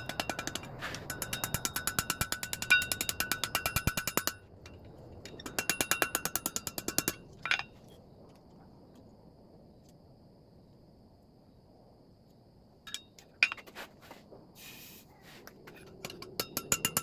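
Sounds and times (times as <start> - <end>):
hammer blows ringing on anvil: 0.0 - 4.4.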